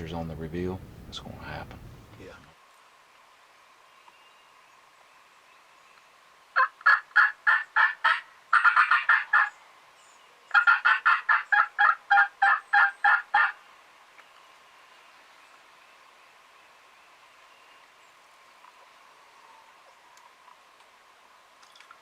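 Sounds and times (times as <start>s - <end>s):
wild turkey calling: 6.6s - 9.6s, 10.4s - 13.7s.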